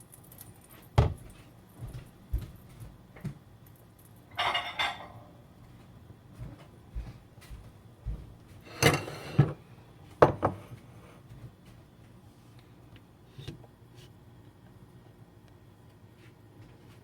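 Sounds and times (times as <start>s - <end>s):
cookware clattering: 4.3s - 5.3s.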